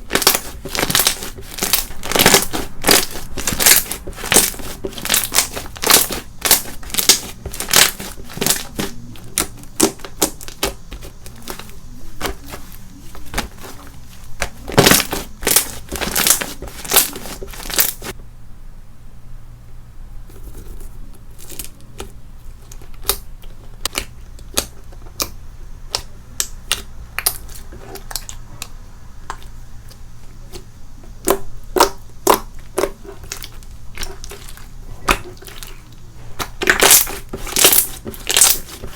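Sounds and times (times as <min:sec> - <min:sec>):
slime squeezed with crackling pops: 0:00.0 - 0:13.7, 0:14.4 - 0:18.1, 0:36.4 - 0:38.9.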